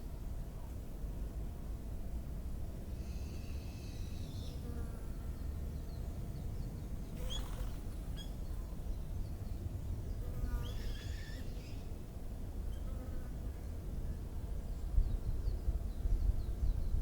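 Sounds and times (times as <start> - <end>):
faint bird chirps: 6.6 - 9.6.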